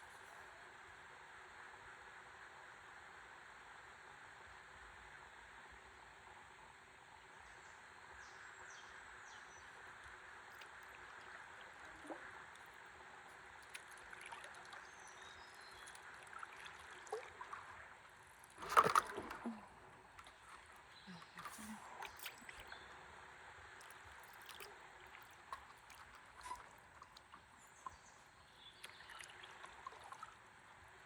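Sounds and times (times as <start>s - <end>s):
river water lapping and trickling: 7.2s - 31.0s.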